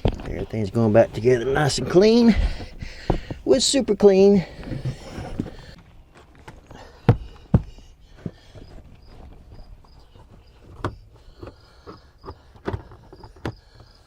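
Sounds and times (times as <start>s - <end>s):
car interior parts knocking: 0.0s - 5.8s.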